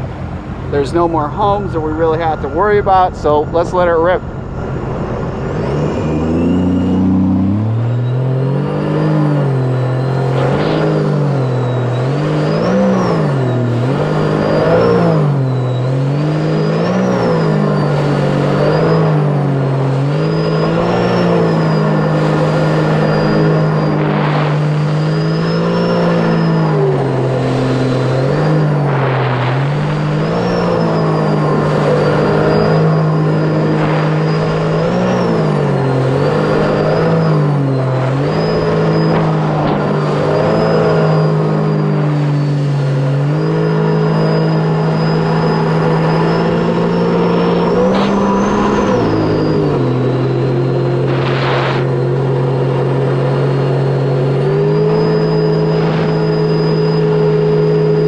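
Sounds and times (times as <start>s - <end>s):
personal watercraft engine whining: 0.0s - 58.0s.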